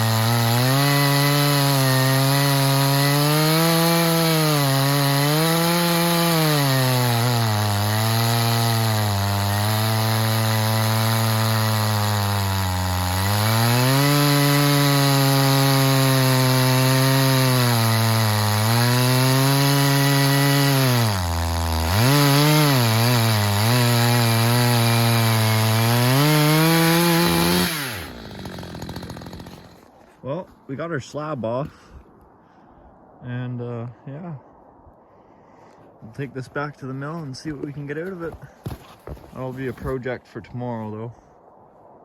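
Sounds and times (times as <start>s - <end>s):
chainsaw cutting through log: 0.0s - 30.1s, 37.4s - 40.0s.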